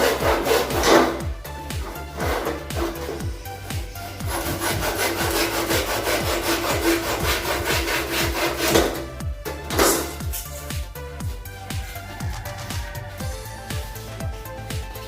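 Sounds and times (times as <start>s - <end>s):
hand saw cutting wood: 0.0s - 10.6s
electronic music with steady beat: 0.0s - 15.0s.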